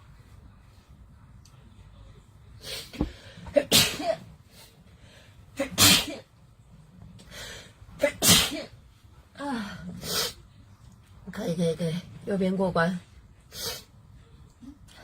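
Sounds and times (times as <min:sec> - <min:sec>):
woman sneezing: 0:03.6 - 0:04.2, 0:05.6 - 0:06.2, 0:08.0 - 0:08.7.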